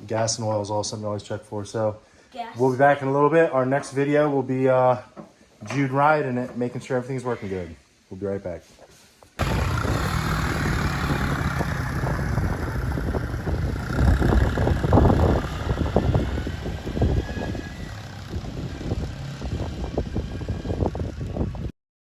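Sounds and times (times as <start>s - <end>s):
four-wheeler engine humming: 9.4s - 21.7s.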